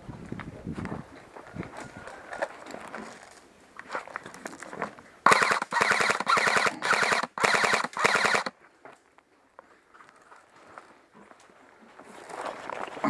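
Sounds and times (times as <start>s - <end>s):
airsoft gun bursts: 5.2s - 8.5s.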